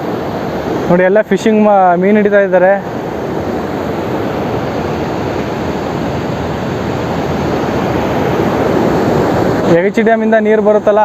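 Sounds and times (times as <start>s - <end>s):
river water rushing over dam: 0.0s - 11.0s.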